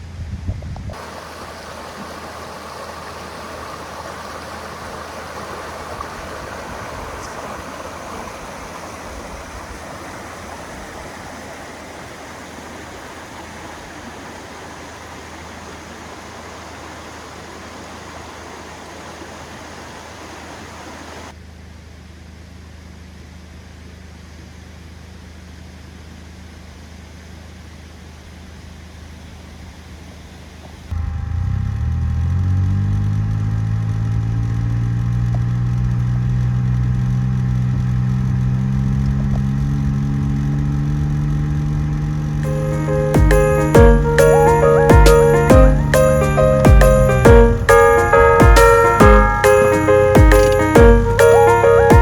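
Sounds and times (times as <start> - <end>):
stream water rushing: 0.9 - 21.4, 39.3 - 52.0
steady low hum: 30.9 - 52.0.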